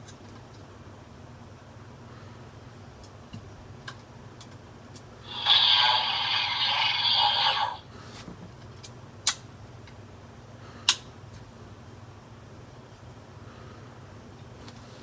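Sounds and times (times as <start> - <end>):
electronic toy sound effect: 5.3 - 7.8.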